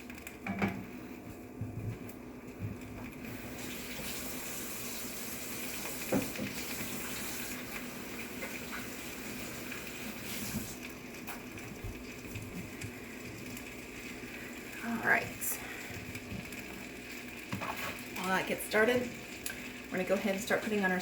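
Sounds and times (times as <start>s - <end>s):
kitchen tap running: 1.9s - 21.0s.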